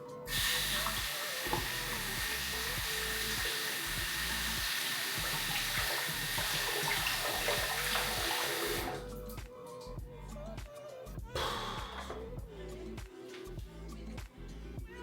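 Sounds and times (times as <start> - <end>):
background music: 0.0 - 15.0
tap running into sink: 0.3 - 9.0.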